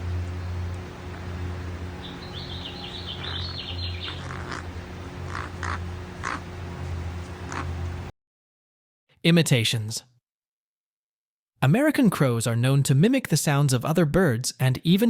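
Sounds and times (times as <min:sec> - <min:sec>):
crow purring rumble: 0:01.1 - 0:06.6, 0:07.3 - 0:07.8
high chirps: 0:02.0 - 0:04.7.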